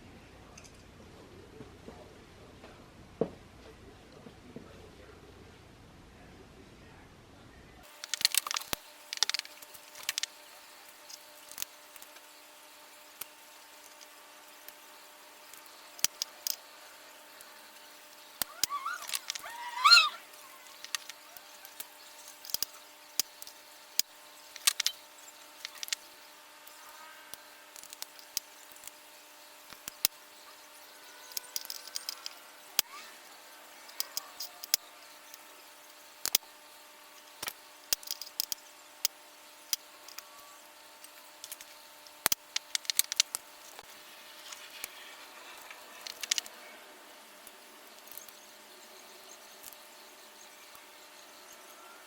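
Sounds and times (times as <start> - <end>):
faint electrical hum: 0.0 - 52.0
objects clicking and rattling: 7.8 - 10.4, 18.4 - 19.5, 20.6 - 26.1, 31.3 - 32.9, 37.4 - 40.3, 41.0 - 46.5.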